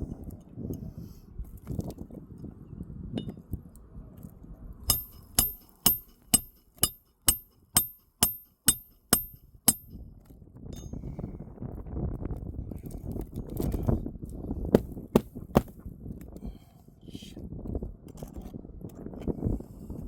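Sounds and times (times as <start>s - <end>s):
hammer tapping metal: 4.9s - 10.0s.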